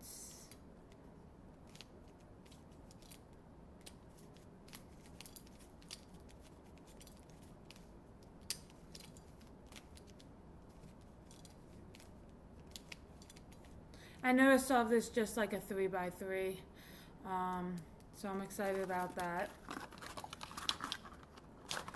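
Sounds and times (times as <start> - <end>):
puzzle cube plastic clicks: 18.6 - 21.9.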